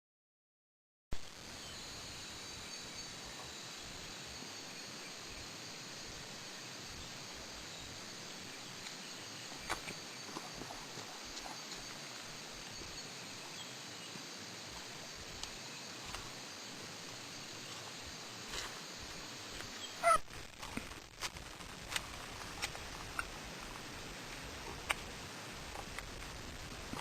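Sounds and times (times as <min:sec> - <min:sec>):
steady hiss: 0:01.2 - 0:27.0
pitched chirp: 0:19.7 - 0:20.2.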